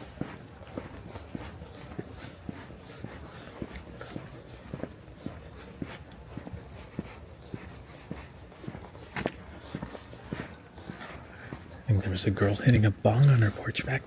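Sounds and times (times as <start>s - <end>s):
footsteps walking: 0.0s - 14.0s
thin high whine: 4.8s - 8.8s.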